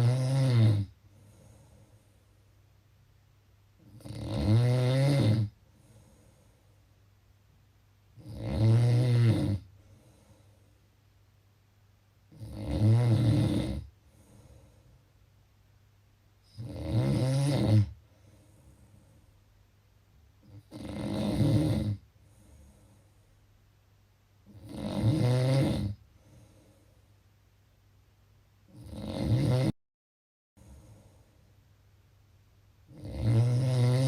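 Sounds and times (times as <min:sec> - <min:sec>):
loud snoring: 0:00.0 - 0:01.6, 0:03.8 - 0:06.2, 0:08.2 - 0:10.4, 0:12.3 - 0:14.6, 0:16.5 - 0:18.0, 0:20.4 - 0:22.8, 0:24.5 - 0:26.6, 0:28.7 - 0:29.8, 0:32.9 - 0:34.0
faint breath out: 0:01.0 - 0:02.5, 0:14.0 - 0:15.1.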